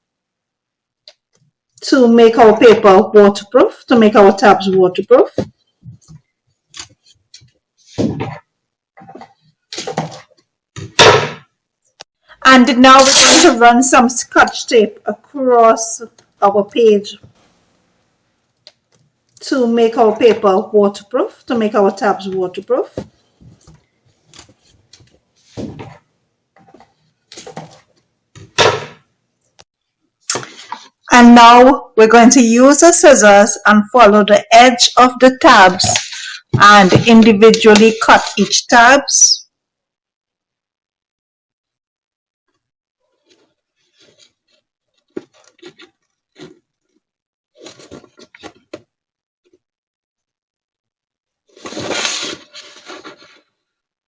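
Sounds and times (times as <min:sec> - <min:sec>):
tape ripping and rustling: 0:13.0 - 0:13.6, 0:51.5 - 0:53.4
paper rustling: 0:47.6 - 0:48.8, 0:51.5 - 0:53.6.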